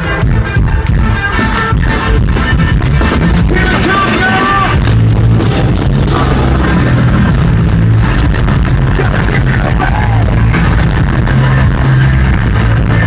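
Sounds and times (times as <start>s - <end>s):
live rock band playing: 0.0s - 13.0s.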